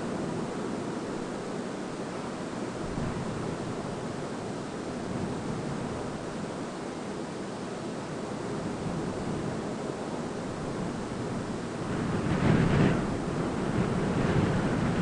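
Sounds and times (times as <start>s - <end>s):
wind rushing: 12.0s - 15.0s.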